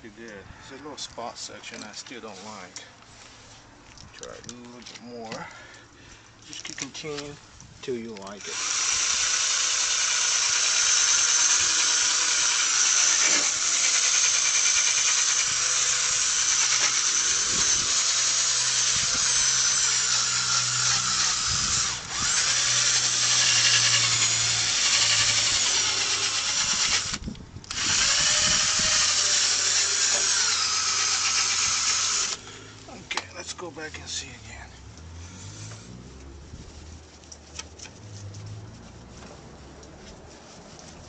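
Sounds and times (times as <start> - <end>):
electric drill whining: 8.4 - 32.6.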